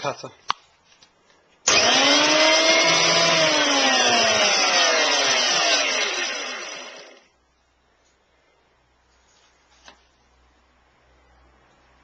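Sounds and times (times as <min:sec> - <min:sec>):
electric power planer whining: 0:01.7 - 0:07.3.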